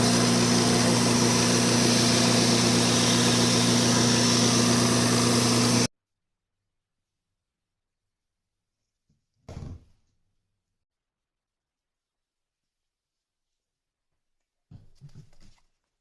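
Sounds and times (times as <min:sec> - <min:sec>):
electric power tool running: 0:00.0 - 0:05.9.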